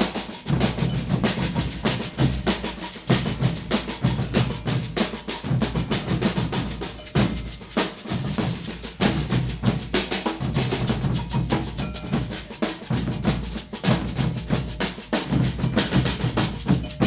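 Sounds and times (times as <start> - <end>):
rapid snare-like strokes: 0.0 - 10.7.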